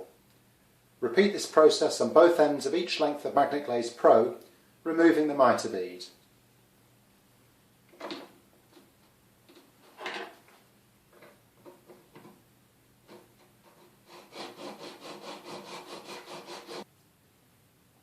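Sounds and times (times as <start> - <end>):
hand saw strokes: 13.1 - 16.8.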